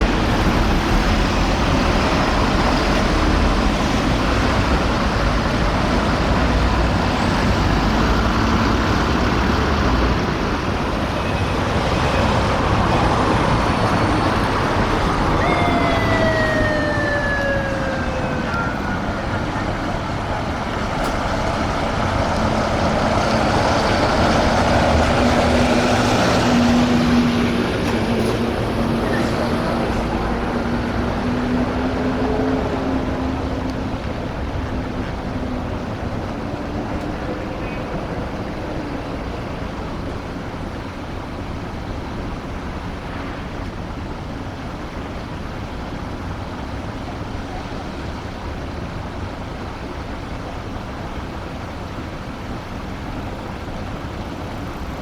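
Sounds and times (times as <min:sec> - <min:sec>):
road traffic noise: 0:00.0 - 0:55.0
motorcycle siren wail: 0:14.1 - 0:20.3.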